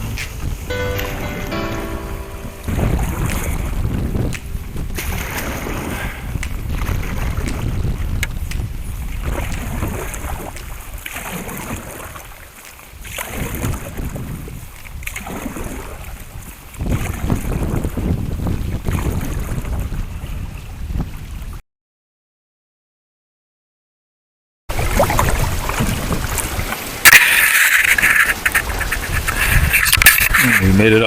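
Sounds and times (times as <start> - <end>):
sharp knocks: 0.0 - 2.4
wind buffeting microphone: 2.9 - 12.0, 12.9 - 21.6.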